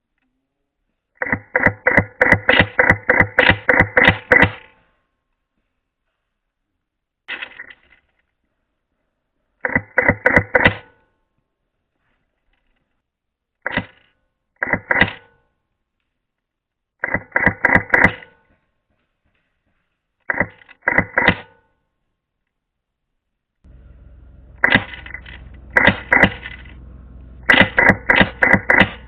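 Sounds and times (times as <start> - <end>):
airsoft gun shots: 1.2 - 4.7, 20.3 - 21.6, 24.6 - 26.8, 27.4 - 29.0.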